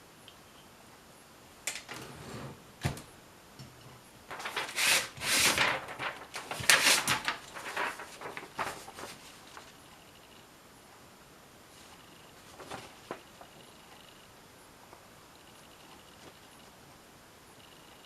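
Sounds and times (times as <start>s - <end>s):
typewriter sliding rasping sweeps: 4.6s - 5.6s.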